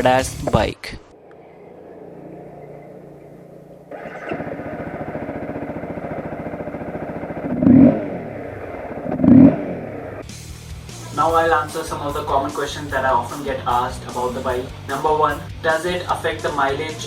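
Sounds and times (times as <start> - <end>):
motorcycle engine idling and revving: 1.1 - 10.4.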